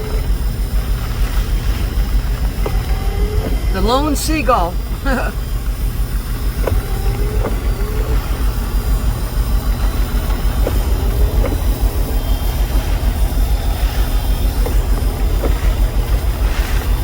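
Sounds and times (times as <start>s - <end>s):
car engine idling rumble: 0.0s - 17.0s
faint knocks: 2.3s - 3.8s, 6.0s - 13.2s.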